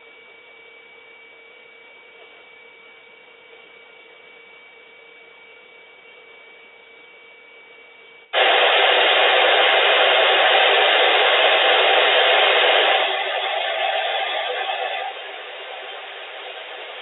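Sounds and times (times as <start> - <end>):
faint steady hum: 0.0 - 17.0
radio static hiss: 8.4 - 17.0.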